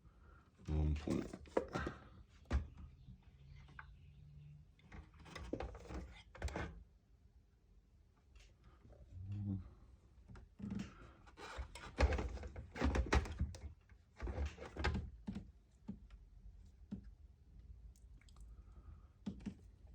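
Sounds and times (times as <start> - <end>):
clatter of handling console parts: 1.0 - 2.8, 4.9 - 6.8, 10.3 - 16.2.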